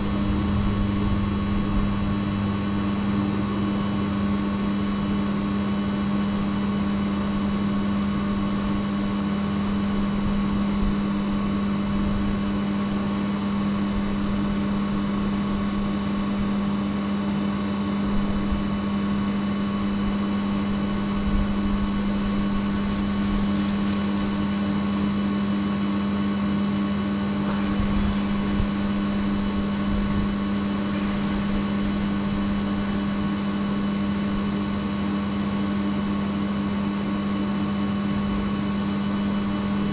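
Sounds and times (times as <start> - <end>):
electrical machine hum: 0.0 - 39.9
faint brief hisses: 27.3 - 34.2.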